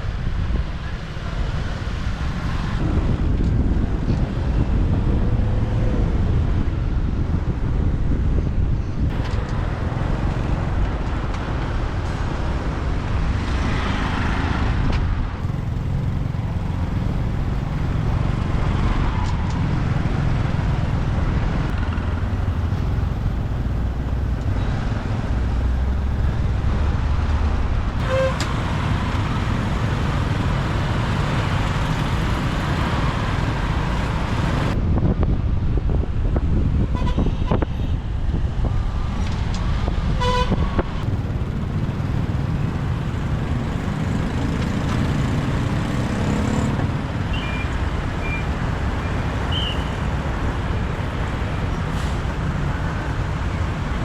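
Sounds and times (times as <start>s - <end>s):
surrounding traffic: 0.0s - 54.0s
horn toot: 28.0s - 29.9s
motorbike engine rumble: 28.0s - 34.8s, 41.0s - 54.0s.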